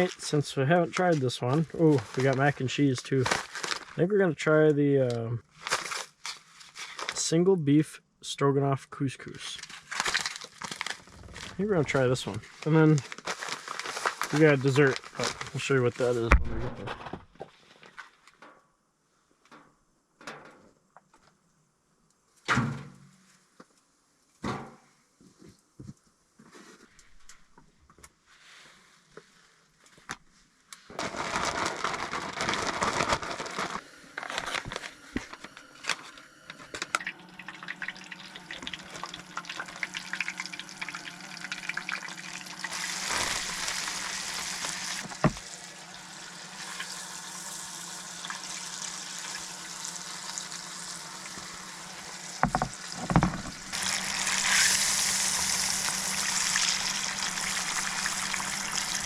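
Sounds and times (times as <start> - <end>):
liquid pouring and bubbling: 36.9 - 45.6, 52.1 - 59.0
fish sizzling in hot oil: 37.4 - 59.0.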